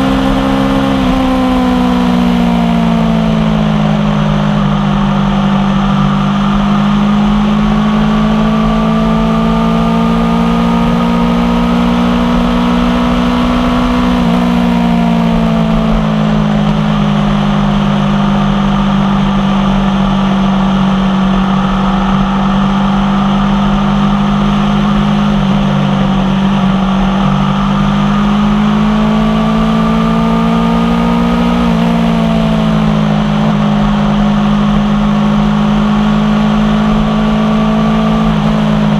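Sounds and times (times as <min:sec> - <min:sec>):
motorcycle engine running: 0:00.0 - 0:38.9.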